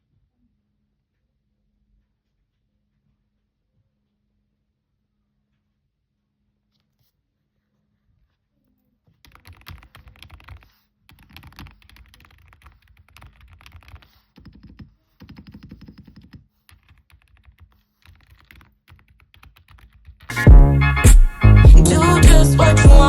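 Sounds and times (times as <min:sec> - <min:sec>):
typing on mechanical keyboard: 0:09.2 - 0:20.3.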